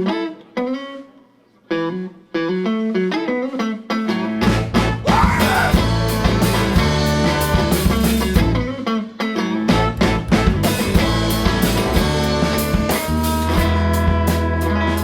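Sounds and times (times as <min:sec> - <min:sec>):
rock band playing: 0:03.1 - 0:15.0
picked guitar phrase: 0:04.9 - 0:06.1.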